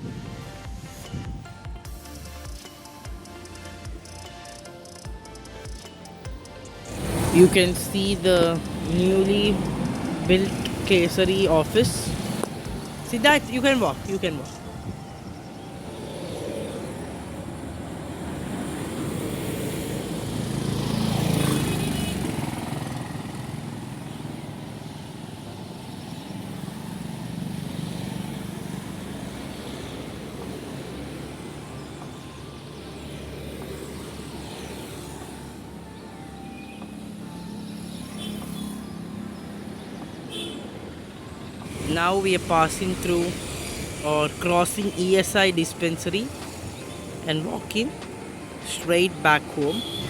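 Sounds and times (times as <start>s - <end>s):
road traffic engines: 0.0s - 50.0s
vehicle passing close: 6.8s - 50.0s.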